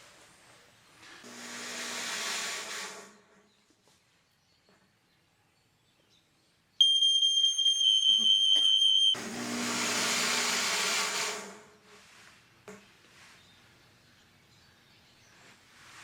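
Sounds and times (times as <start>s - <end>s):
smoke alarm tone: 6.8s - 9.2s.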